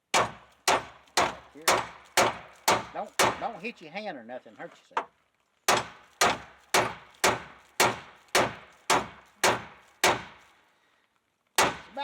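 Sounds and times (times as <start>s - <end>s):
hammer striking steel: 5.7s - 10.4s.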